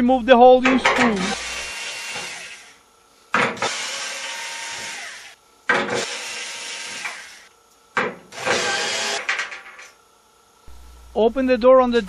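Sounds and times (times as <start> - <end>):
cordless screwdriver running: 1.2 - 2.7, 3.6 - 5.4.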